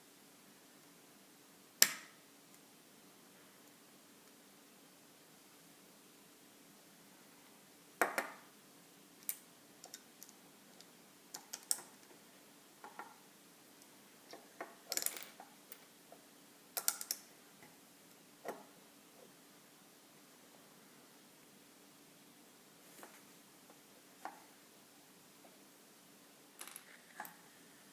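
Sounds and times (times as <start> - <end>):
plastic bricks clicking together: 11.4 - 11.9, 16.8 - 17.3.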